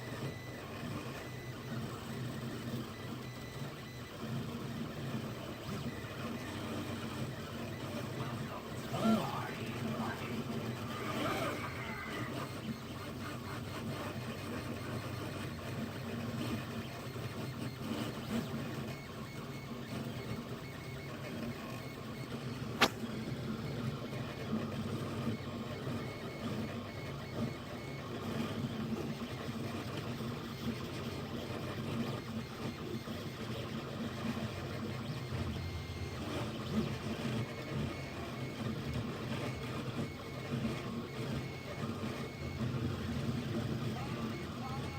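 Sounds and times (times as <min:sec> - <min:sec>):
stepper motors humming: 0:00.3 - 0:16.6, 0:32.1 - 0:44.9
sharp click: 0:22.8 - 0:23.1.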